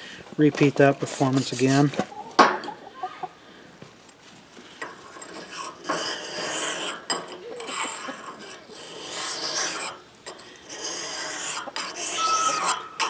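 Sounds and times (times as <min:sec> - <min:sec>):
blade rasping on sharpening surface: 0:01.2 - 0:01.9, 0:05.0 - 0:13.0.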